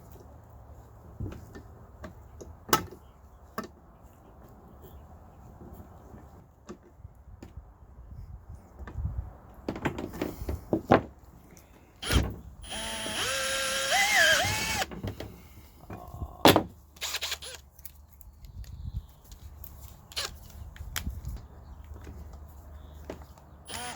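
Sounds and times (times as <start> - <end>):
power drill whining: 12.0 - 14.9, 17.0 - 17.6, 23.7 - 23.9.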